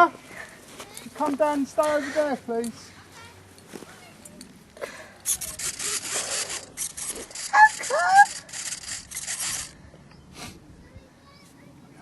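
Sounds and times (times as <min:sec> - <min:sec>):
rustling and scraping: 0:05.2 - 0:09.8
squeaky gliding squeals: 0:05.3 - 0:09.8.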